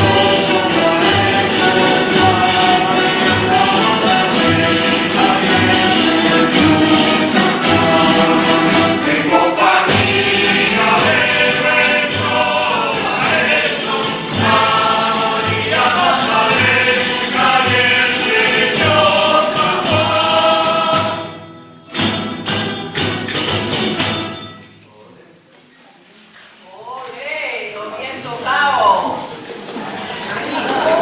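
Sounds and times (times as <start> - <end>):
choir singing: 0.0 - 21.6
tambourine beat: 0.0 - 24.7
instrumental accompaniment: 0.0 - 24.9
sharp strikes: 9.8 - 21.2.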